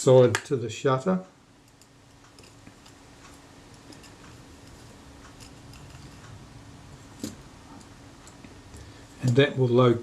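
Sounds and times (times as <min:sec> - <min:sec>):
small metal clicks and ticks: 0:01.6 - 0:06.4.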